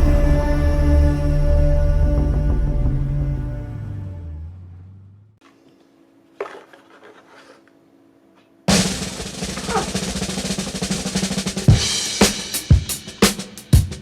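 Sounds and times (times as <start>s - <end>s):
heavy drum hit: 8.7s - 14.0s
snare drum roll: 8.7s - 14.0s.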